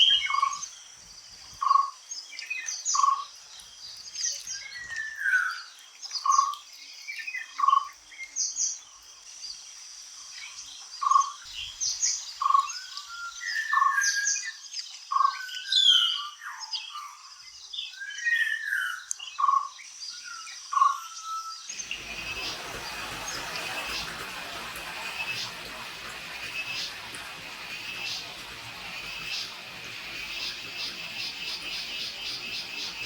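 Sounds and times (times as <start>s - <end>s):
birds calling and singing: 10.4s - 33.0s.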